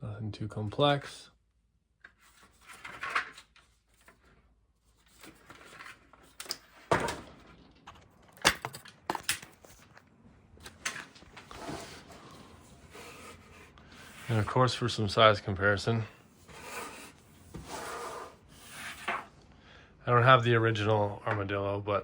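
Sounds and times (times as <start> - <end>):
objects set down on hard surface: 5.6 - 10.0.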